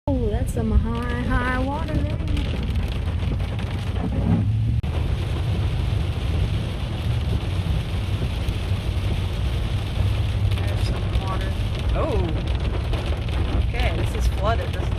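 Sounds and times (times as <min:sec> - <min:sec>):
car road noise on wet road: 0:00.1 - 0:14.9.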